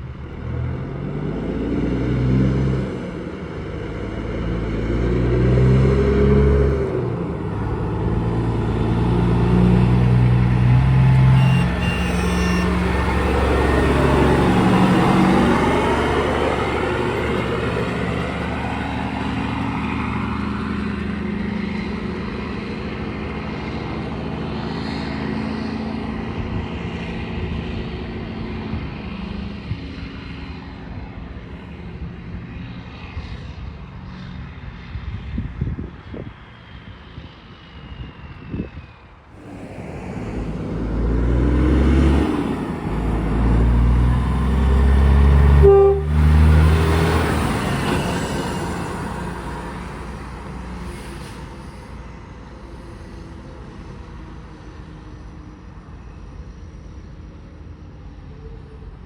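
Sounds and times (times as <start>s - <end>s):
heavy vehicle engine passing: 0.0s - 35.0s, 39.2s - 56.9s
deep low rumble: 39.3s - 44.5s.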